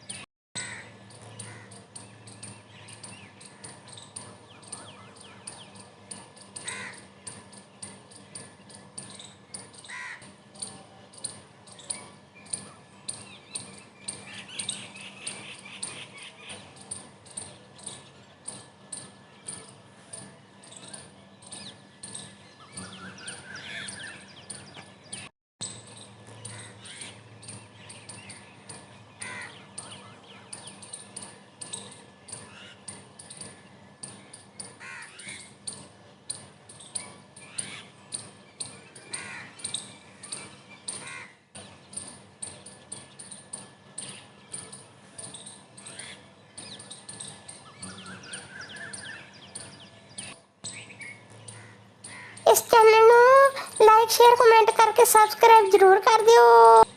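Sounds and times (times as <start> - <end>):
birds chirping: 19.3 - 42.1.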